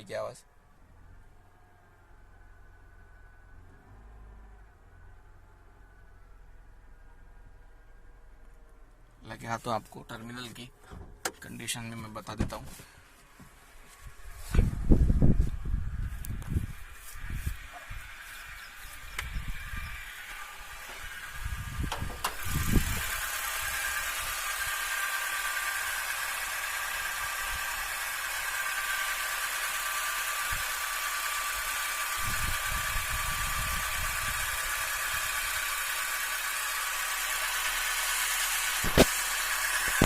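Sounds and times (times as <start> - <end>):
car engine idling: 0.0 - 40.0
low rumbles: 13.7 - 24.6
sharp click: 38.8 - 39.2.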